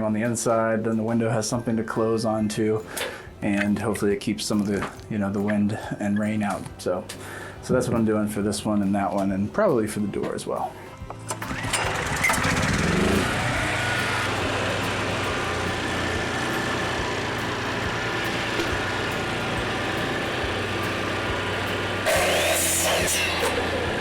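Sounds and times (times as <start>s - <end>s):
small engine humming: 11.3s - 24.0s.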